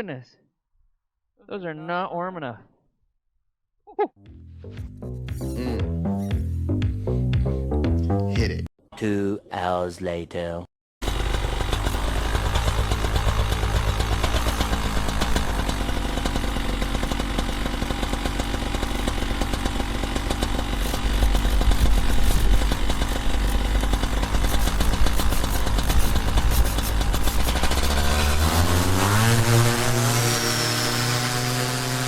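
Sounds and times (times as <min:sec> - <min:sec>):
paramotor engine and propeller: 0:11.0 - 0:32.0.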